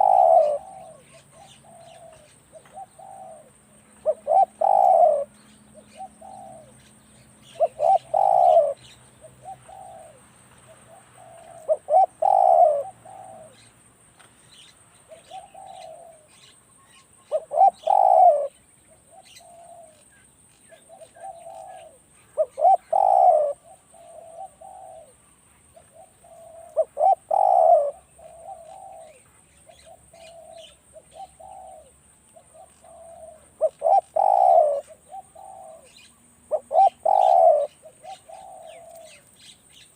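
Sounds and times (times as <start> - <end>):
doves cooing: 0.0 - 13.7, 15.1 - 16.4, 17.3 - 20.1, 20.7 - 39.3.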